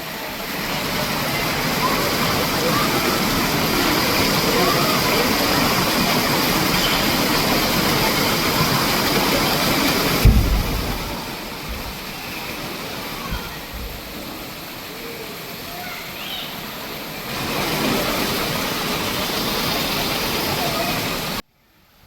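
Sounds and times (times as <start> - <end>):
waterfall rushing: 0.0 - 21.4
low thump: 10.2 - 12.0.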